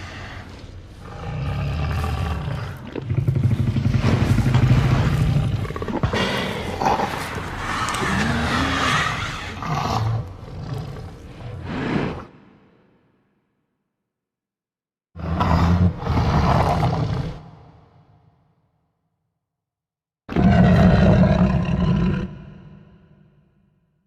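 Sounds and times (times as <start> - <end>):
deep dinosaur roar: 0.0 - 12.6, 15.2 - 18.0, 20.3 - 23.6.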